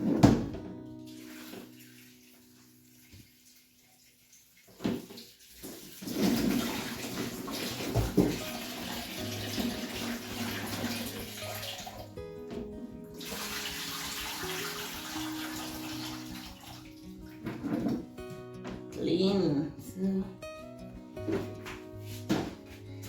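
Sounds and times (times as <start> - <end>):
water running and splashing: 1.0 - 12.2, 13.2 - 18.0.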